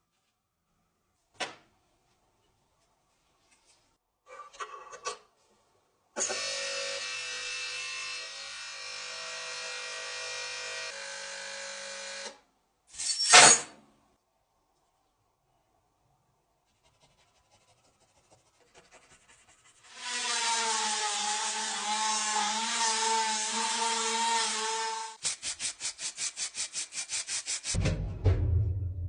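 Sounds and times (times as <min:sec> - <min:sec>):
rapid scraping strokes: 0:25.2 - 0:27.8
low thump: 0:27.8 - 0:29.0.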